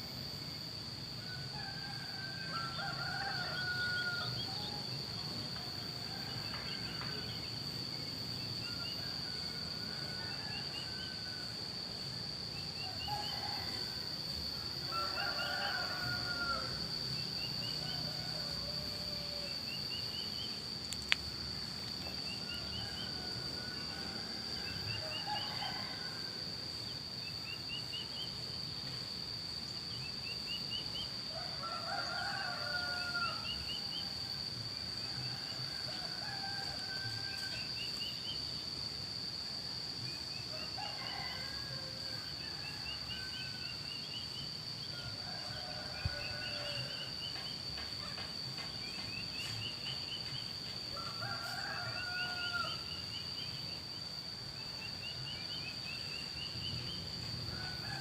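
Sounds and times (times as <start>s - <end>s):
high-pitched insect drone: 0.0s - 58.0s
roosters crowing: 1.2s - 5.1s, 12.6s - 19.9s, 22.2s - 26.6s, 31.2s - 37.8s, 40.5s - 43.9s, 44.7s - 48.8s, 50.7s - 53.1s, 56.0s - 58.0s.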